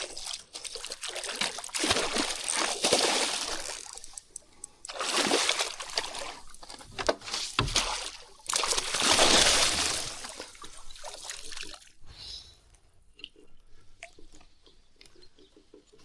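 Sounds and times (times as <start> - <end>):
water splashing and sloshing: 0.0 - 12.0.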